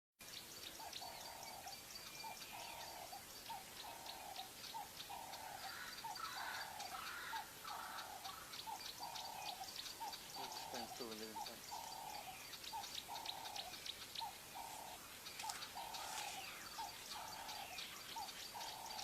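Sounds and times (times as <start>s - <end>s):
quick high chirps and ticks: 8.0s - 19.0s.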